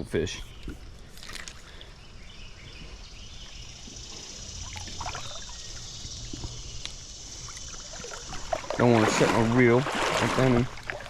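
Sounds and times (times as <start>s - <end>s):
creek water running: 4.3s - 11.0s.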